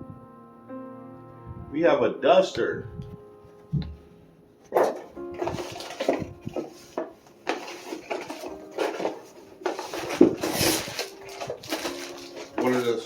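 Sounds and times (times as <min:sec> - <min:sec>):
packaging rustling: 0:04.6 - 0:13.0.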